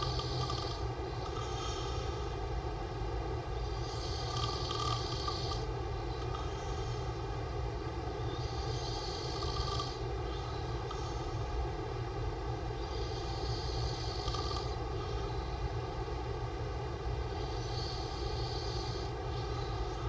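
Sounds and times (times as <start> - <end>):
man snoring: 0.0 - 2.4, 3.6 - 5.6, 8.4 - 10.0, 12.8 - 15.4, 17.4 - 20.0
steady low hum: 0.0 - 20.0.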